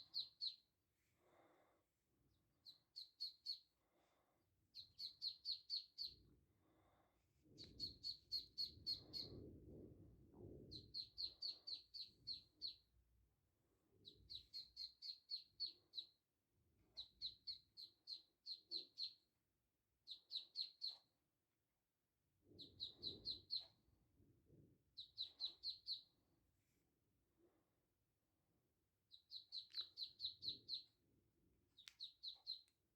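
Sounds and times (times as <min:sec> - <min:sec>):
ducklings peeping: 0:00.0 - 0:00.6, 0:02.6 - 0:03.6, 0:04.8 - 0:06.2, 0:07.6 - 0:09.3, 0:10.7 - 0:12.8, 0:14.0 - 0:16.2, 0:17.0 - 0:19.2, 0:20.1 - 0:21.1, 0:22.6 - 0:23.8, 0:25.0 - 0:26.1, 0:29.1 - 0:30.9, 0:31.8 - 0:32.7.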